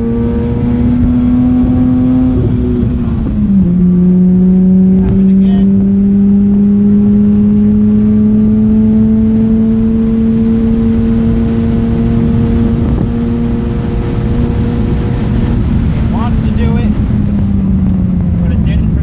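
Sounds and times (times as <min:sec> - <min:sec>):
rotary car engine running: 0:00.0 - 0:19.0.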